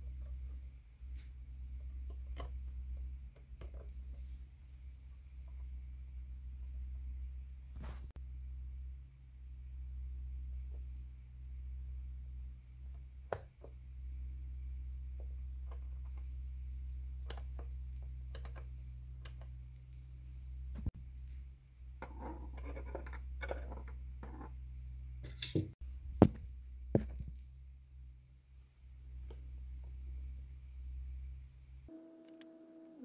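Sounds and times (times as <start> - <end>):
small parts clicking and scratching: 22.0 - 24.6.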